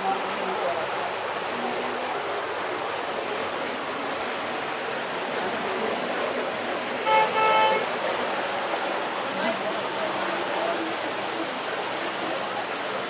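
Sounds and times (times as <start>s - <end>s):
heavy rain: 0.0s - 13.0s
running water: 0.0s - 13.0s
vehicle horn honking: 7.0s - 7.9s.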